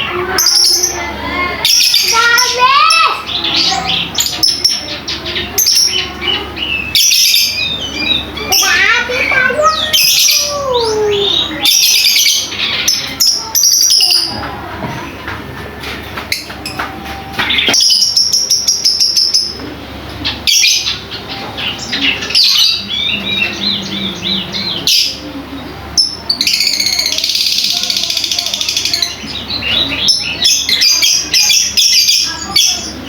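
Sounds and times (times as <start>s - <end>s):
lovebird chattering: 1.6s - 14.4s.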